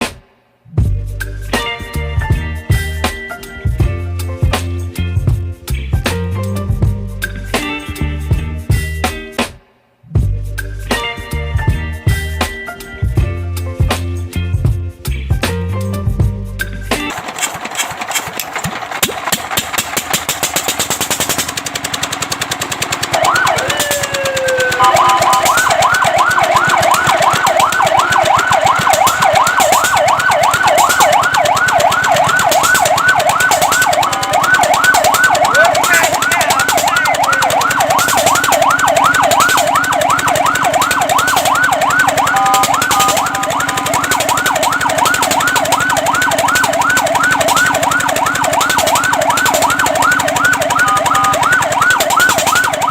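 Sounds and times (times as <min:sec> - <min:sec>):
rapid pulsing clatter: 0:17.1 - 0:52.9
fire truck siren: 0:23.0 - 0:52.9.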